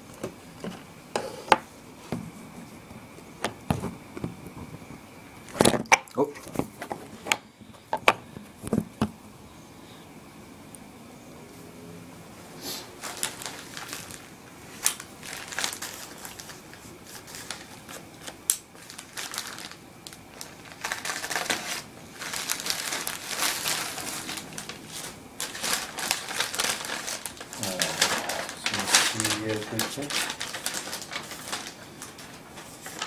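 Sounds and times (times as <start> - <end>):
packaging crinkling and rustling: 13.0 - 33.0.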